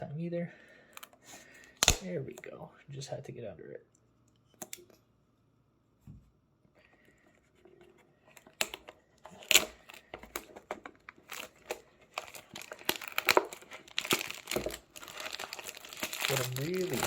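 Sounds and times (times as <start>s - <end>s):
cardboard tearing and crinkling: 8.5s - 17.0s.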